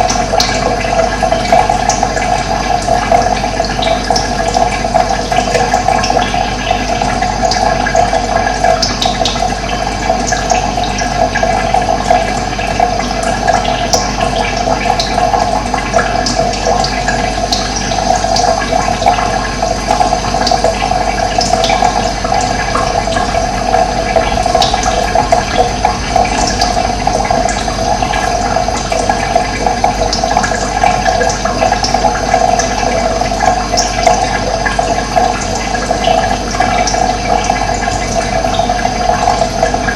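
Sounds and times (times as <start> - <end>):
water rushing: 17.8 - 39.9.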